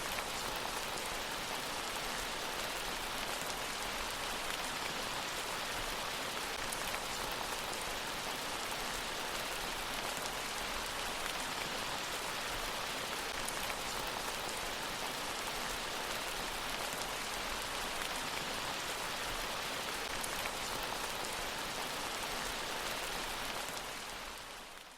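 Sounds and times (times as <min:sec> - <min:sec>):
steady rain hiss: 0:00.0 - 0:24.9.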